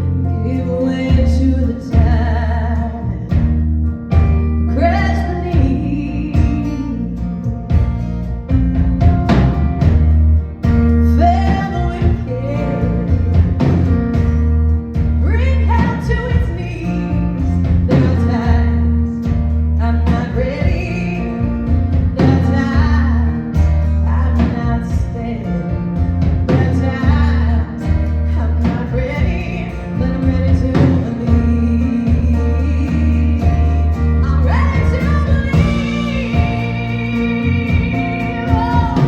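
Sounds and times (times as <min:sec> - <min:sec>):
heavy bass notes: 0:00.0 - 0:39.0
live band playing: 0:00.0 - 0:39.0
drum hits: 0:03.3 - 0:04.6, 0:07.7 - 0:25.2, 0:30.2 - 0:39.0
person singing: 0:11.0 - 0:14.0, 0:19.8 - 0:39.0.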